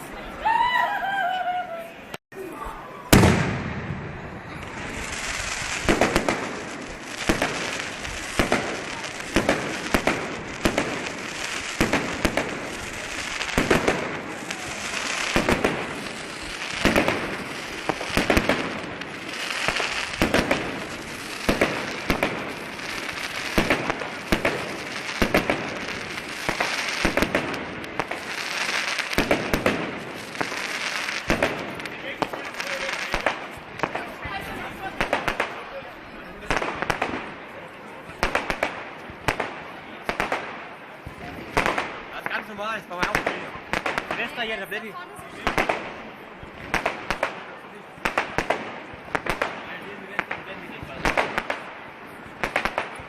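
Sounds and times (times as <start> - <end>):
fireworks crackling: 0.0 - 53.0
fireworks bangs: 2.0 - 53.0.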